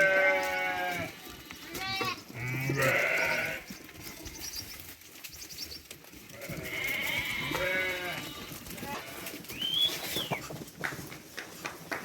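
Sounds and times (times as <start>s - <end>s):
sheep bleating: 0.0s - 4.6s, 6.3s - 9.4s.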